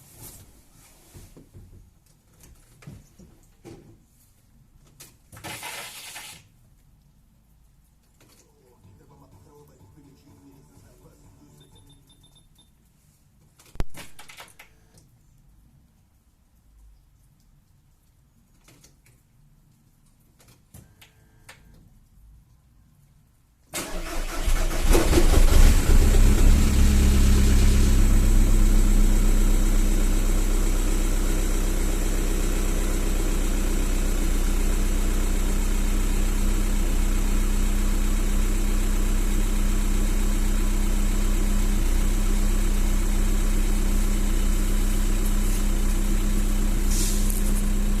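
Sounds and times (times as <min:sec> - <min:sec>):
starter motor cranking: 0:23.8 - 0:26.8
diesel engine idling: 0:23.8 - 0:48.0.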